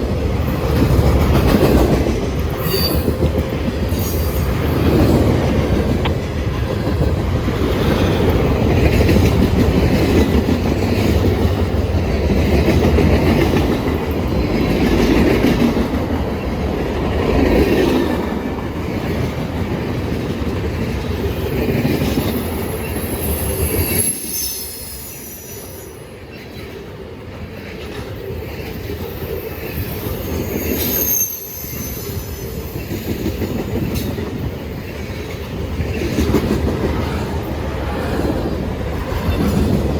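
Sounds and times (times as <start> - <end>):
train wheels clattering on rails: 0.0 - 25.5, 26.2 - 39.9
high wheel squeals: 2.5 - 3.3, 21.6 - 26.1, 29.2 - 33.4.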